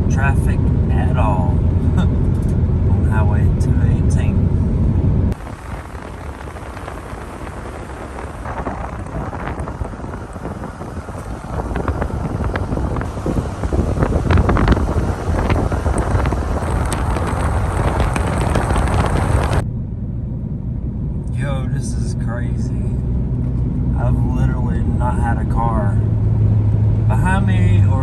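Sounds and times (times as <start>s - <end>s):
wind buffeting microphone: 0.0s - 21.2s
car road rumble: 0.0s - 28.0s.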